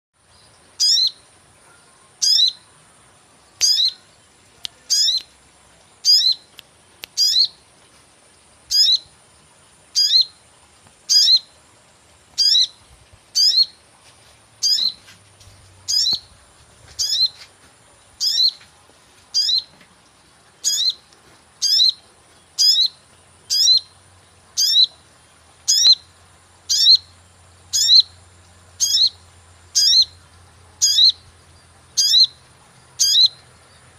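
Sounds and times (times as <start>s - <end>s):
high downward sliding chirp: 3.6s - 4.2s, 4.9s - 5.4s, 6.0s - 7.6s, 9.9s - 10.4s, 12.4s - 13.8s, 14.6s - 15.0s, 15.8s - 16.4s, 17.0s - 17.4s, 20.6s - 24.0s, 24.6s - 32.4s, 33.0s - 33.5s.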